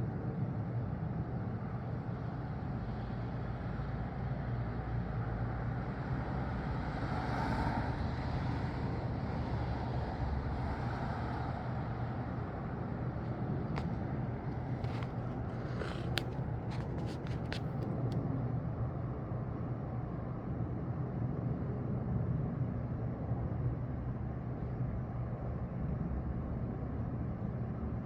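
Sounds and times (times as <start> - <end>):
road traffic hum: 6.5 - 18.2.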